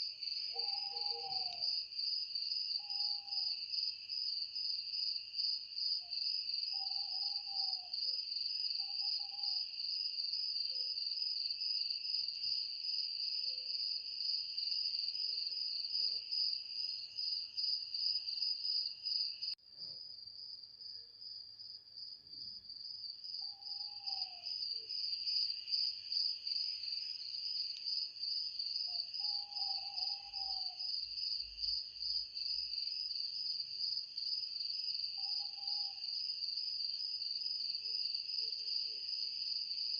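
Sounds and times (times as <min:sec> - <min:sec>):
crickets chirring: 0:00.2 - 0:10.4, 0:23.4 - 0:39.8
short low insect calls: 0:23.3 - 0:38.8.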